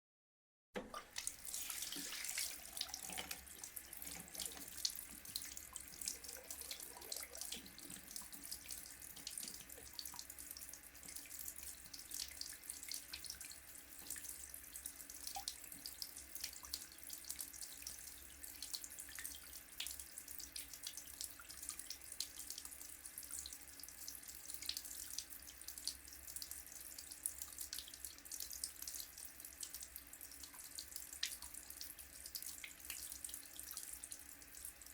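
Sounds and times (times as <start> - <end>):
water running from tap into sink: 0.8 - 24.5.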